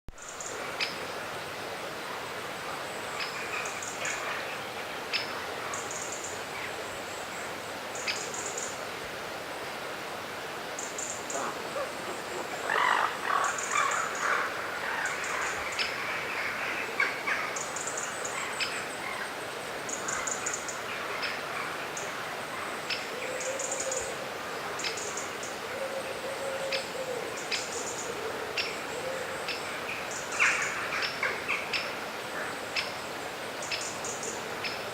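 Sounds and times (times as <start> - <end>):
river rushing: 0.2 - 26.2
songbirds chirping: 10.7 - 34.9.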